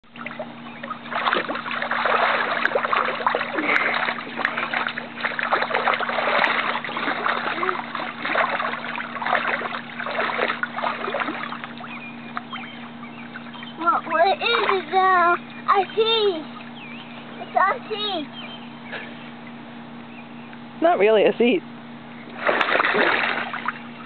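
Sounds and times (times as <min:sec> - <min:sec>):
water splashing in pool: 0:00.0 - 0:16.8, 0:22.3 - 0:24.0
steady low hum: 0:00.0 - 0:24.0.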